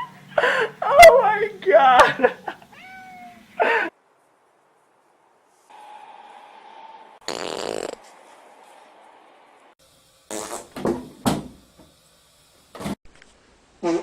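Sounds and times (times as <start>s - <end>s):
farts: 7.2s - 8.2s, 10.3s - 11.0s.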